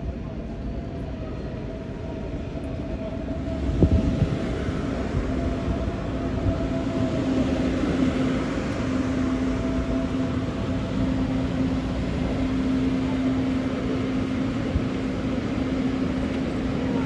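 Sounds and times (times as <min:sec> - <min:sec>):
electric train running: 0:01.7 - 0:17.0.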